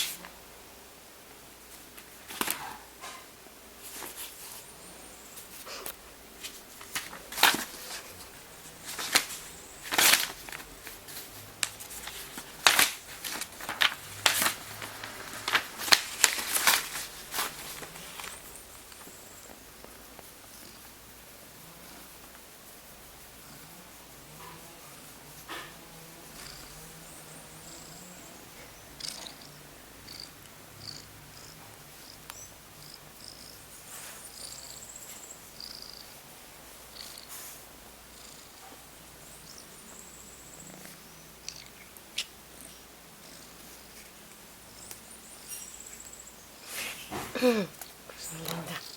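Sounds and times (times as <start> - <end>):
paper rustling and scraping: 0.0 - 0.3, 1.7 - 3.2, 3.8 - 4.7, 5.4 - 27.8
cat purring: 3.8 - 47.3, 48.1 - 48.9.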